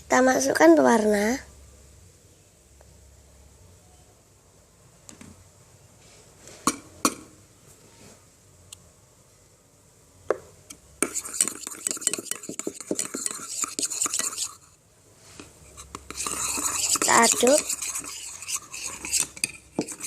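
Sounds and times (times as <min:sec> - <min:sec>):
utensil stirring in plastic container: 0:11.0 - 0:14.7, 0:15.4 - 0:20.0.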